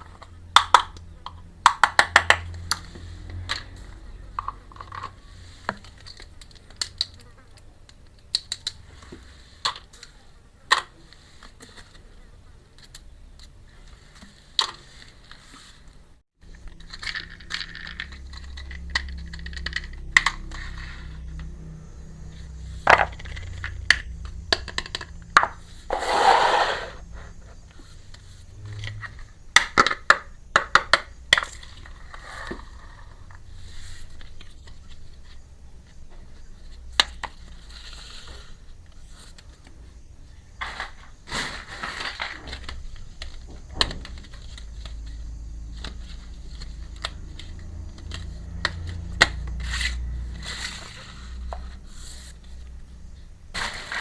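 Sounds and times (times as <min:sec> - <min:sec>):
toy pieces clicking and tapping: 0:00.1 - 0:08.8, 0:16.6 - 0:20.7, 0:22.9 - 0:25.6
toy pieces scraping: 0:16.6 - 0:21.3, 0:25.8 - 0:27.3.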